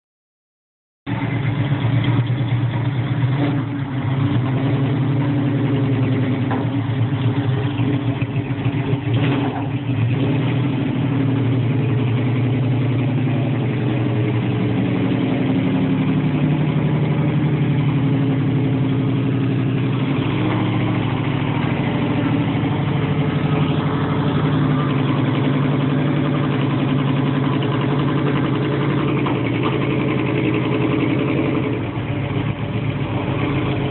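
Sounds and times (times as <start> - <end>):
car engine running: 1.1 - 33.9.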